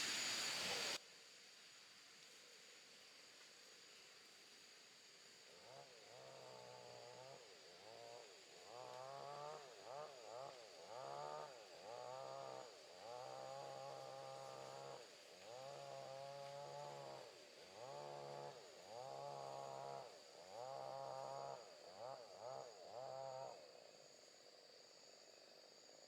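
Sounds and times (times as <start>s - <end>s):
distant chainsaw revving: 8.7s - 17.2s, 17.8s - 23.5s.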